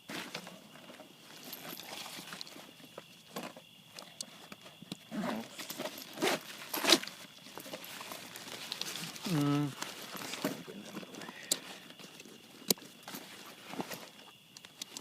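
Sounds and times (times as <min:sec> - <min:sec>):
fabric rustling: 0:05.2 - 0:14.3.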